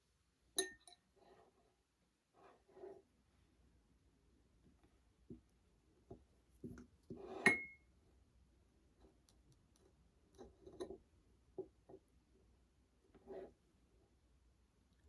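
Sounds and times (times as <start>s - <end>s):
glass clinking: 0.6s - 1.0s, 7.4s - 7.8s.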